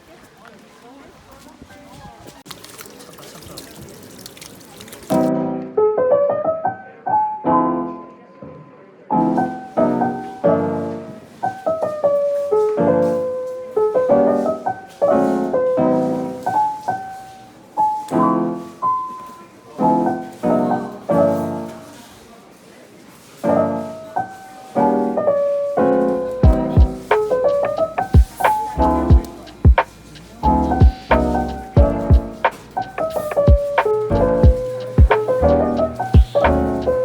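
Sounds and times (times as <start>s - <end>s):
gentle piano music: 5.1s - 37.0s.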